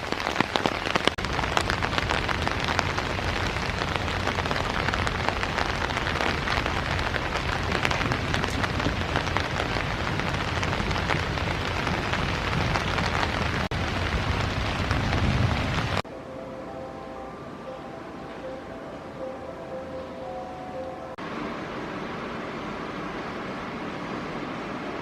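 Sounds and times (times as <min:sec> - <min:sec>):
hard rain falling: 0:00.0 - 0:16.0.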